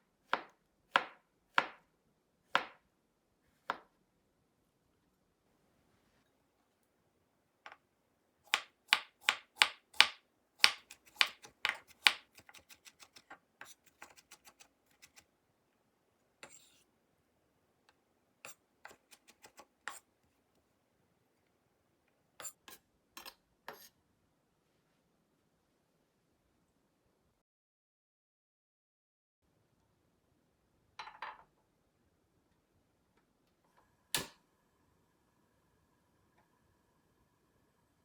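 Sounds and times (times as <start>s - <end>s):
knife chopping vegetables on board: 0.3s - 1.8s, 2.5s - 2.8s, 8.5s - 15.2s, 18.5s - 20.1s.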